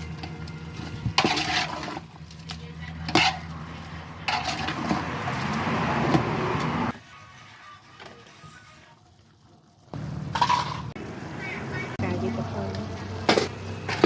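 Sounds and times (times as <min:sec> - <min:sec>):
utensils clattering on dishes: 0:01.0 - 0:02.0, 0:03.0 - 0:03.6, 0:04.2 - 0:05.0, 0:10.3 - 0:11.0.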